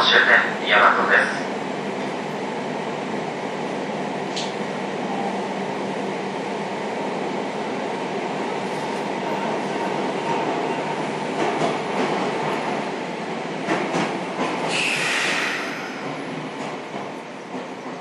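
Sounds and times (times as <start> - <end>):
electric train running slowly: 0.2 - 18.0
brake air hiss: 14.7 - 15.9.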